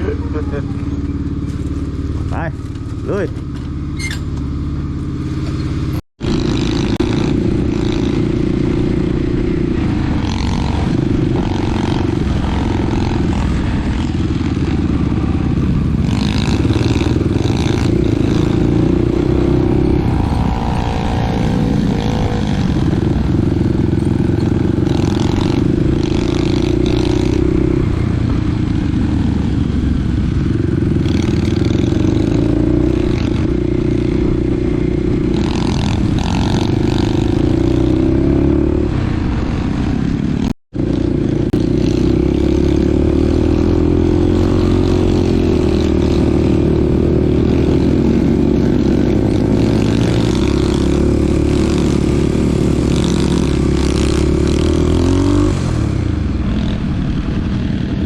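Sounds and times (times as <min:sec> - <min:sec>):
dirt bike engine revving: 0:00.0 - 0:58.0.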